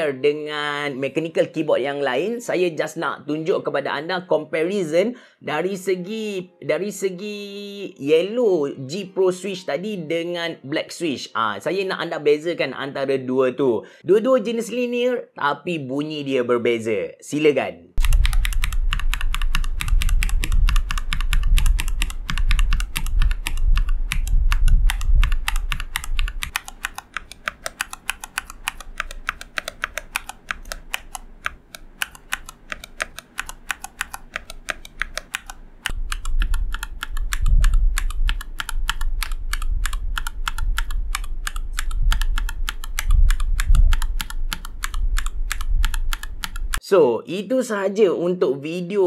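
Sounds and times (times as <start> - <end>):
fast typing on mechanical keyboard: 18.0 - 46.8.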